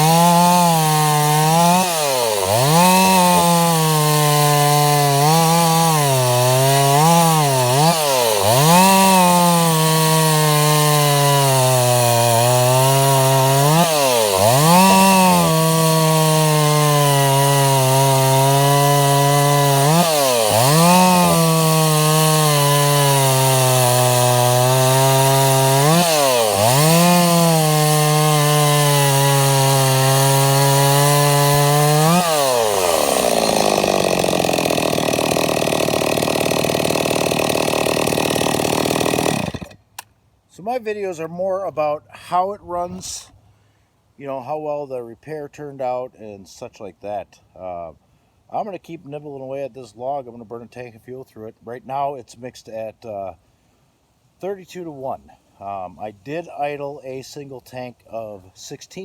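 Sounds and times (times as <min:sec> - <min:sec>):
chainsaw cutting log: 0:00.0 - 0:40.1.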